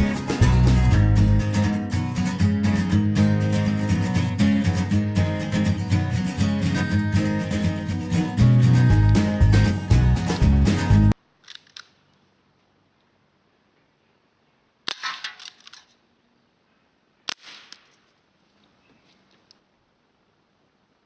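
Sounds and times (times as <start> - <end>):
air gun shots: 14.9 - 15.5, 17.3 - 18.0.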